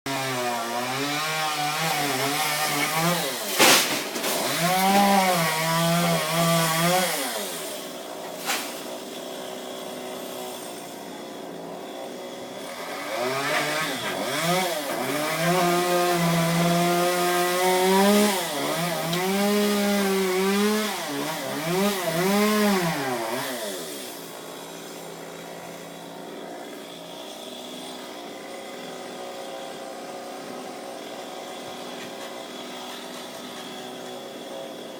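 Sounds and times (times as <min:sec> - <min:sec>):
chainsaw cutting wood: 0:00.1 - 0:34.9
sharp crack: 0:03.4 - 0:04.5.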